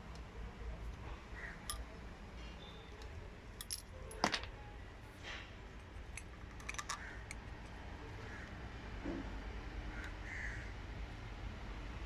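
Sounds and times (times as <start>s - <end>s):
light metallic clicks and clinks: 1.6s - 4.5s, 5.2s - 7.8s.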